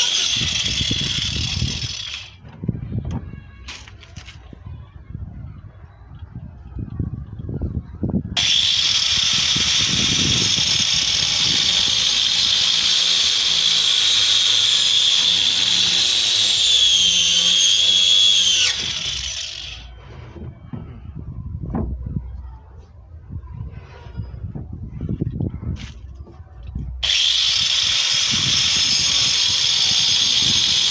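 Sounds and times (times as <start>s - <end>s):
power tool whining: 0.0s - 2.4s, 8.4s - 20.4s, 27.0s - 30.9s.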